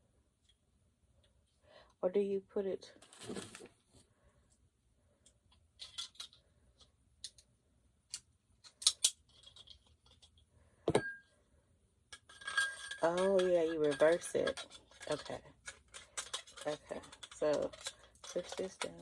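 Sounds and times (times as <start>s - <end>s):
metal parts clicking and clacking: 5.8s - 6.4s, 8.1s - 10.4s, 12.1s - 19.0s.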